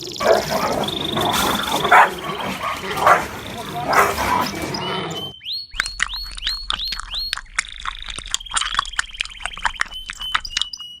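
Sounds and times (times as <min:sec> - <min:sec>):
puppy yelping: 0:00.2 - 0:05.3.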